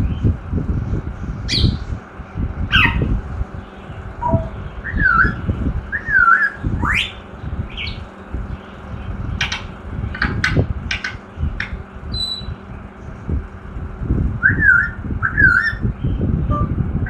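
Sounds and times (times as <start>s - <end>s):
low rumbling background noise: 0.0s - 17.0s
parrot whistling: 2.7s - 3.1s, 4.2s - 8.0s, 12.1s - 12.6s, 14.4s - 15.9s
parrot clicking chirps: 9.4s - 12.5s.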